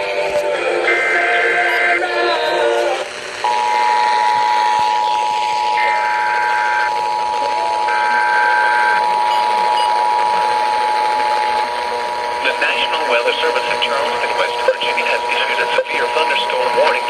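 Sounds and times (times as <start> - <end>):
two-tone alert signal: 0.8 - 11.7.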